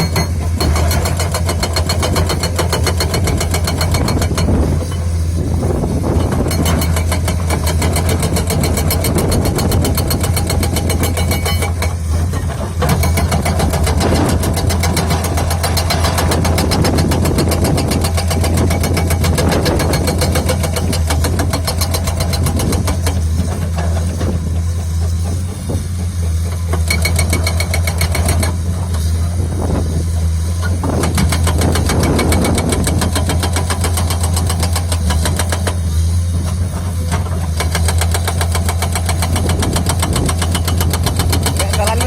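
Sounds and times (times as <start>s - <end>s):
hydraulic breaker hammering: 0.0s - 5.0s, 6.0s - 24.6s, 30.7s - 35.8s
excavator engine running: 0.0s - 42.0s.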